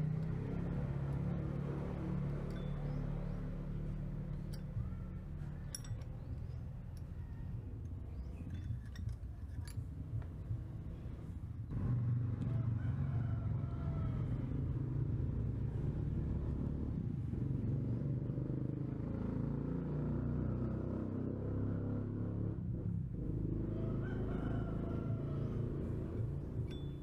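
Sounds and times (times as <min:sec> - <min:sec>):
low engine rumble: 0:00.0 - 0:18.5.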